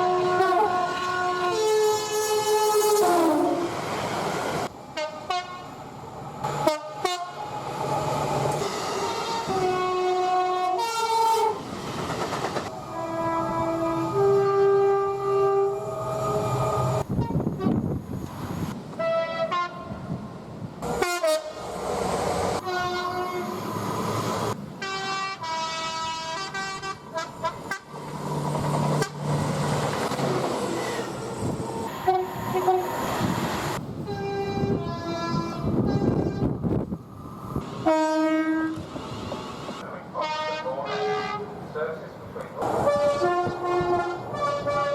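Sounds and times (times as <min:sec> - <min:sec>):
two-tone train horn blasts: 0:00.0 - 0:03.7, 0:05.0 - 0:05.8, 0:06.6 - 0:07.4, 0:09.1 - 0:11.6, 0:12.8 - 0:17.9, 0:19.0 - 0:20.0, 0:20.8 - 0:21.6, 0:22.6 - 0:23.7, 0:24.8 - 0:28.0, 0:28.9 - 0:29.3, 0:31.9 - 0:33.0, 0:34.1 - 0:36.6, 0:37.8 - 0:38.9, 0:40.2 - 0:41.5, 0:42.6 - 0:44.9
rumble of passing trains: 0:00.0 - 0:44.9.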